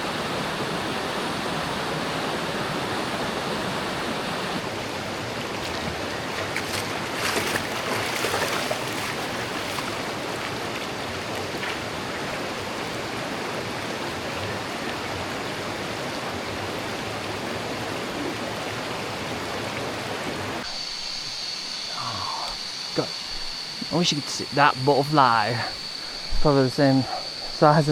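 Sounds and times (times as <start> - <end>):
steady rushing noise: 20.4 - 27.9
steady high tone: 20.6 - 27.9.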